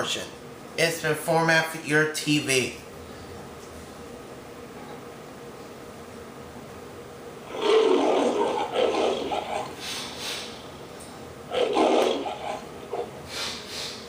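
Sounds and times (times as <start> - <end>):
lion roaring: 7.4 - 9.9, 11.5 - 13.3.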